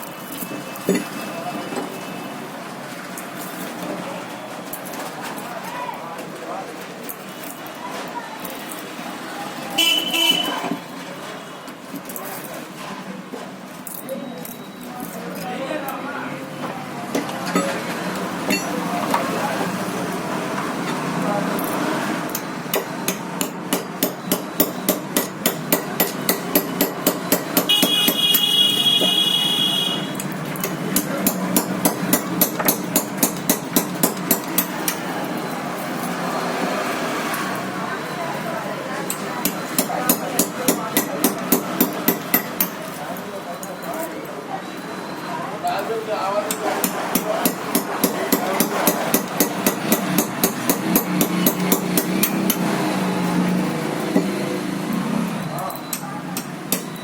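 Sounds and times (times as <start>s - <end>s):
rapid hammer blows on metal: 22.3s - 28.6s, 30.5s - 35.1s, 39.4s - 43.0s, 46.4s - 53.0s, 55.9s - 57.0s
rapid hammer blows: 46.5s - 52.9s.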